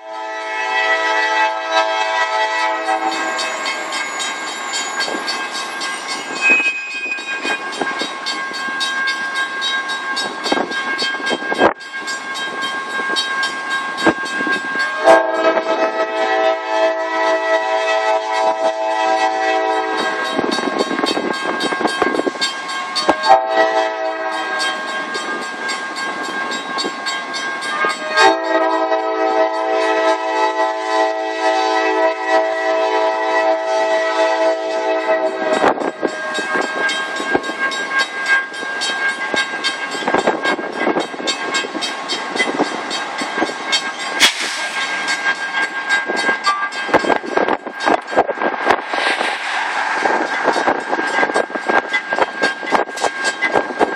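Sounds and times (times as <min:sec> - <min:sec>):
locomotive air horn blasts: 0:00.0 - 0:04.0, 0:14.4 - 0:20.6, 0:23.1 - 0:25.1, 0:27.8 - 0:36.9
train wheels on rails: 0:00.0 - 0:53.9.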